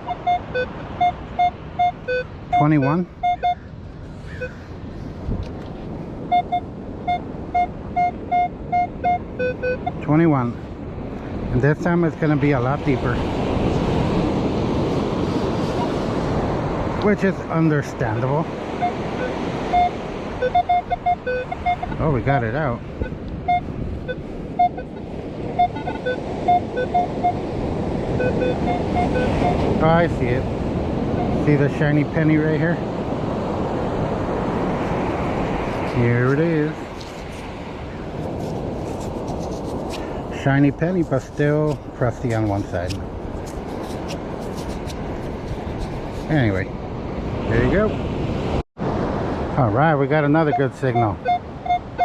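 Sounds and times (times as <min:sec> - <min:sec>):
metal detector beeps: 0:00.0 - 0:03.6, 0:04.3 - 0:04.6, 0:06.2 - 0:10.1, 0:18.8 - 0:27.4, 0:28.1 - 0:29.7, 0:31.2 - 0:31.5, 0:34.7 - 0:37.4, 0:38.2 - 0:40.2, 0:41.0 - 0:46.4, 0:50.4 - 0:52.0
wind: 0:00.0 - 0:52.0
surf: 0:11.5 - 0:52.0.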